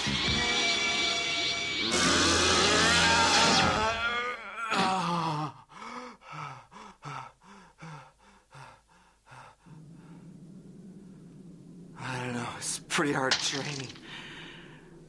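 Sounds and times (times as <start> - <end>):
steady low hum: 9.5 - 15.0.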